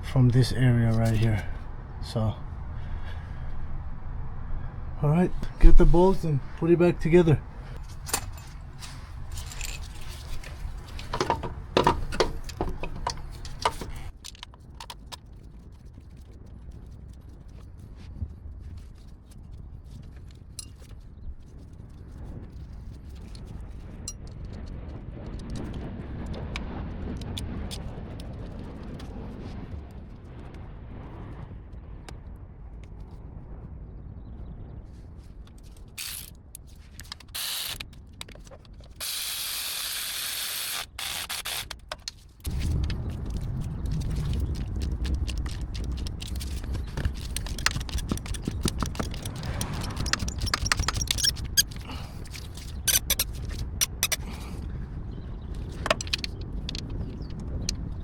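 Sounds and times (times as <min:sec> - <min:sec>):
steady low rumble: 0:00.0 - 0:14.2, 0:15.4 - 0:37.3, 0:42.3 - 0:58.0
metallic clinks of tools: 0:07.8 - 0:14.0, 0:47.5 - 0:54.2
metallic clicks of hand tools: 0:45.2 - 0:54.2.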